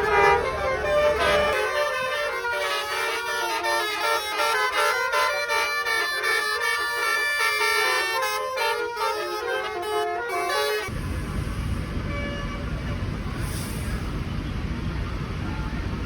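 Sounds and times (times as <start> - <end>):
musical air horns playing a tune: 0.0 - 10.9.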